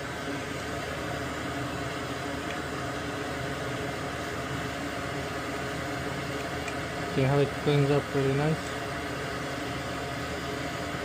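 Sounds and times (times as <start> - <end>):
fan whirring: 0.0 - 11.0.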